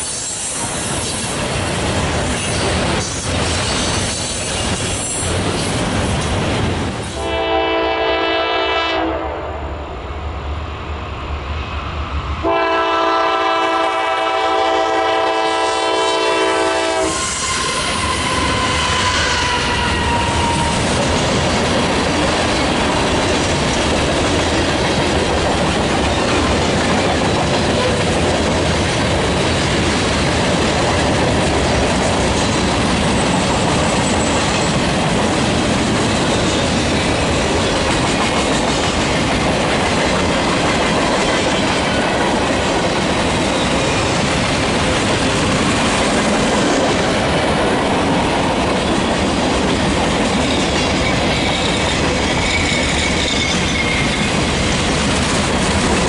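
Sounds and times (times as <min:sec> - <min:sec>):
train wheels rumbling on rails: 0:00.0 - 0:09.2, 0:09.8 - 0:56.0
train air horn blasts: 0:07.1 - 0:09.9, 0:12.4 - 0:20.8.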